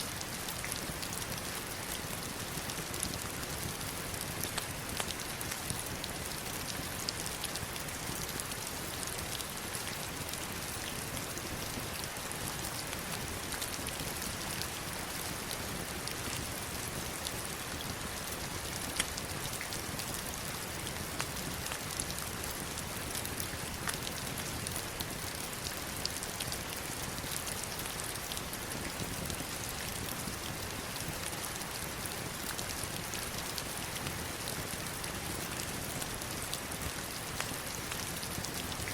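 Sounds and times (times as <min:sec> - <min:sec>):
heavy rain on stones and water: 0:00.0 - 0:38.9.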